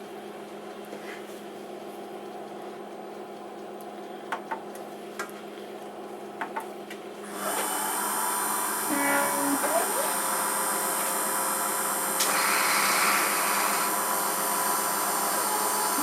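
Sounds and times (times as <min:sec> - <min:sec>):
loud machine whirring: 0:07.2 - 0:16.0
milling machine humming: 0:07.2 - 0:16.0.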